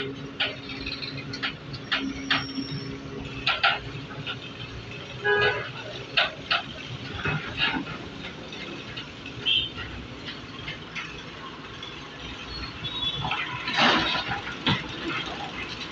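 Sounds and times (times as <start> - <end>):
vehicle horn toot: 5.2 - 5.7.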